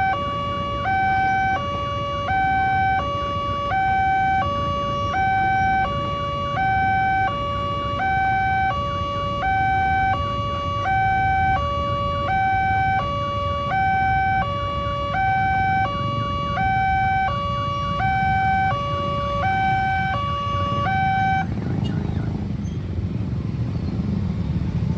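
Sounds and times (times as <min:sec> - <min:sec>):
two-tone crossing alarm siren: 0:00.0 - 0:22.6.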